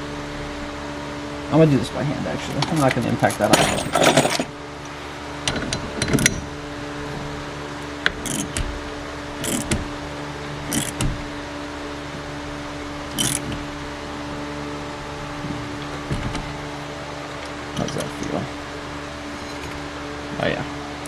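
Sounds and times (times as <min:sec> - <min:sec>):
steady low hum: 0:00.0 - 0:21.0
hand tool clicking and scraping: 0:02.4 - 0:04.5, 0:08.0 - 0:08.7, 0:09.4 - 0:09.9, 0:10.7 - 0:11.1, 0:13.1 - 0:13.6, 0:17.7 - 0:18.4.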